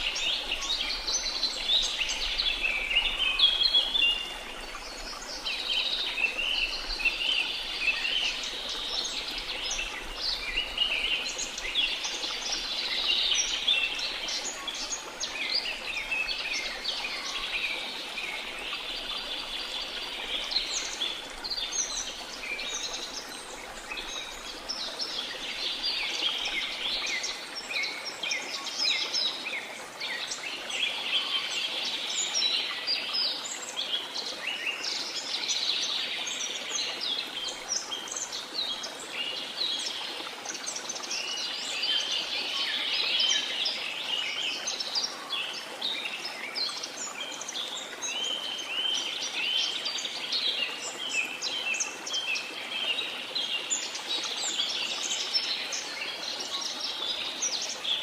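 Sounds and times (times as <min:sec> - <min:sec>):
many birds chirping: 0:00.0 - 0:33.4.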